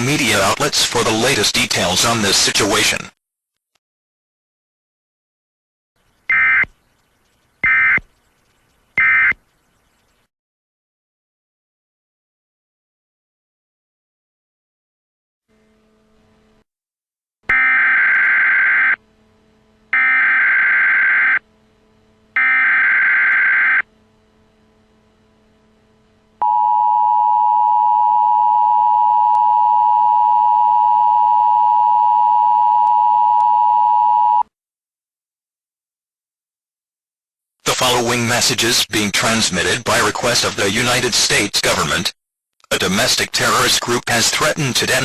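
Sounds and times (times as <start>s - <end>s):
buzzing digital header bursts: 19.9s - 21.4s, 22.4s - 23.9s.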